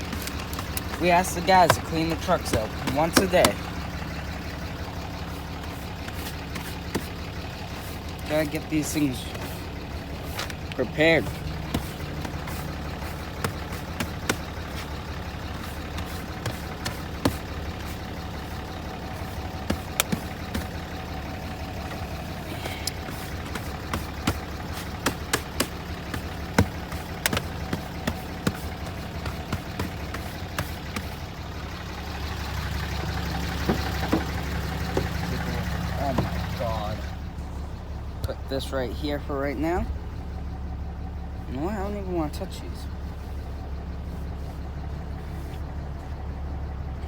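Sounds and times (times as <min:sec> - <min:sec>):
clicks and knocks of handling: 0:00.0 - 0:03.7, 0:19.6 - 0:20.8, 0:21.5 - 0:31.2
diesel truck engine idling: 0:00.0 - 0:47.0.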